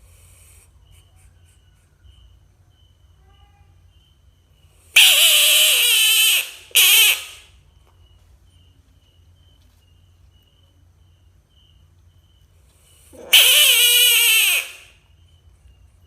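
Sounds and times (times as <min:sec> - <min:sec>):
frog screaming: 0:05.0 - 0:07.5, 0:13.1 - 0:15.0.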